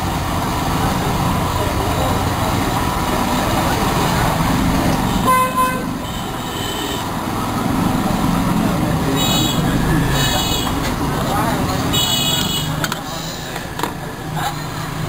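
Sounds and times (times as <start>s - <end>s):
street traffic noise: 0.0s - 15.0s
vehicle horn honking: 5.1s - 7.1s, 9.2s - 10.8s, 11.9s - 12.8s.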